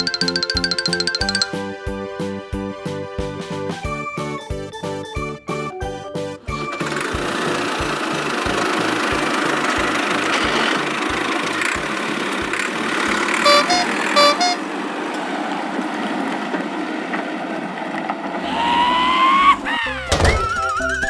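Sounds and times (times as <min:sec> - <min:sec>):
cartoon engine rumble: 0:06.5 - 0:14.6, 0:18.4 - 0:21.0
two-note horn honks: 0:13.4 - 0:14.7
rising whistle-like tone: 0:20.2 - 0:21.0.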